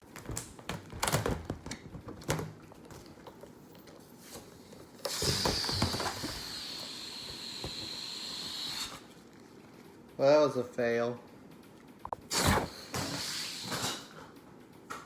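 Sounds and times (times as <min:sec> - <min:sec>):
air hissing from balloon neck: 0:04.0 - 0:09.2, 0:12.2 - 0:14.2.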